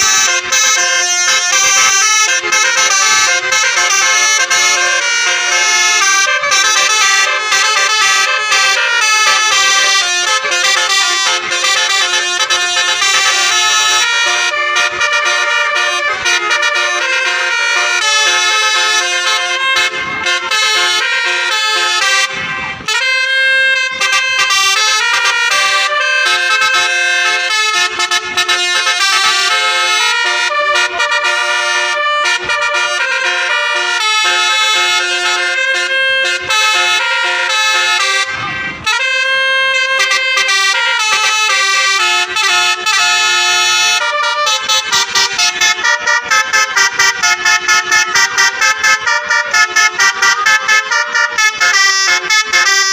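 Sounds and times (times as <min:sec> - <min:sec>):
multi-tone bus horn playing tunes: 0:00.0 - 0:52.9.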